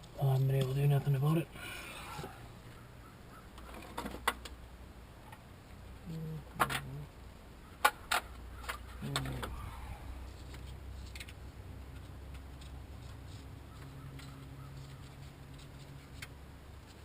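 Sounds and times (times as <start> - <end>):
low grunts: 9.0 - 10.2.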